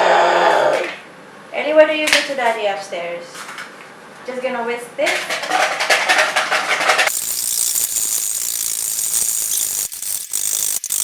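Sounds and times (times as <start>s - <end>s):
whisk rattling in a bowl: 5.3s - 11.0s.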